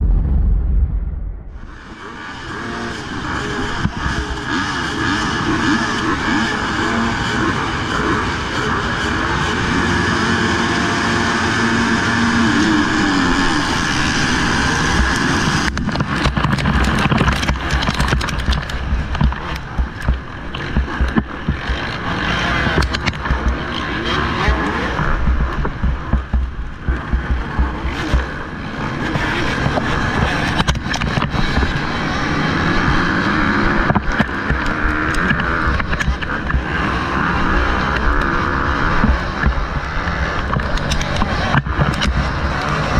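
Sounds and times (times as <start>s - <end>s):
wind buffeting microphone: 0.0s - 3.2s
motocross bike engine revving: 1.7s - 42.9s.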